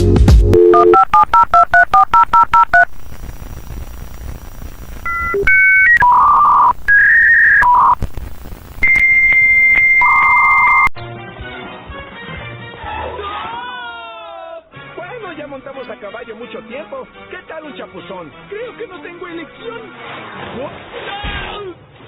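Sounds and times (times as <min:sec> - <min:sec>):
touch-tone digits: 0:00.5 - 0:02.9, 0:05.0 - 0:08.0, 0:08.8 - 0:10.9
telephone dial tone: 0:00.6 - 0:03.0, 0:05.0 - 0:08.0, 0:08.8 - 0:10.9
dial-up modem handshake tones: 0:00.6 - 0:10.9.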